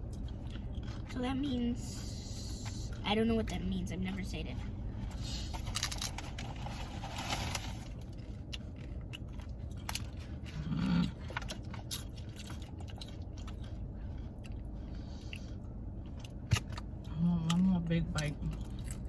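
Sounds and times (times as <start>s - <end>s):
person chewing food: 0.0s - 1.2s, 7.6s - 17.6s, 18.2s - 19.0s.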